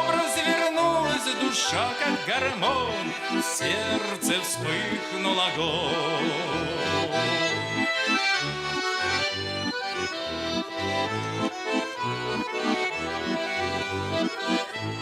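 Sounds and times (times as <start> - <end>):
accordion folk tune: 0.0 - 15.0.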